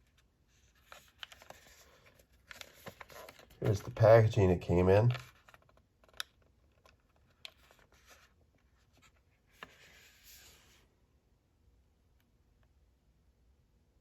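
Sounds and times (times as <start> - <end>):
soft packaging rustle: 0.0 - 10.9.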